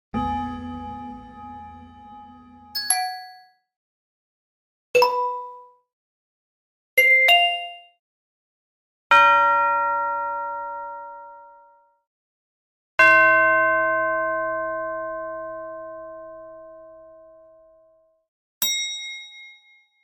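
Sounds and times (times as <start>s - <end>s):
bells struck and ringing: 0.1s - 3.4s, 18.6s - 19.8s.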